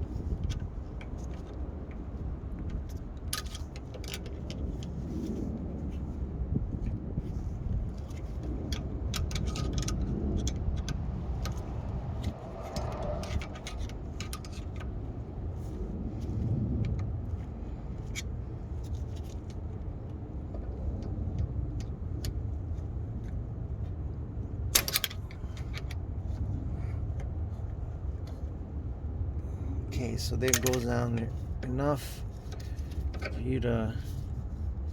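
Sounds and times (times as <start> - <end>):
low rumble: 10.0 - 18.0
metallic clicks of hand tools: 24.8 - 26.0, 30.5 - 31.3.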